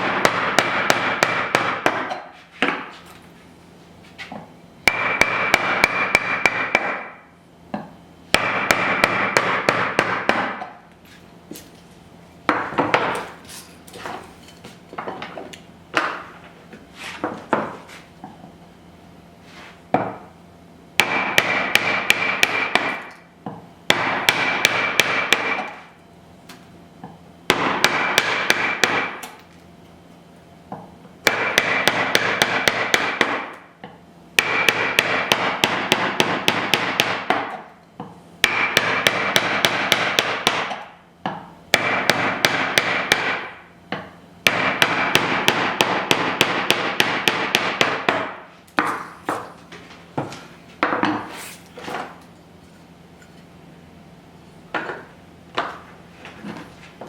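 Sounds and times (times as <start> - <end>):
mallet striking chisel into wood: 0.0 - 2.9, 4.8 - 7.2, 7.8 - 10.8, 19.9 - 20.2, 21.0 - 25.8, 27.0 - 29.3, 30.7 - 37.7, 38.4 - 49.5.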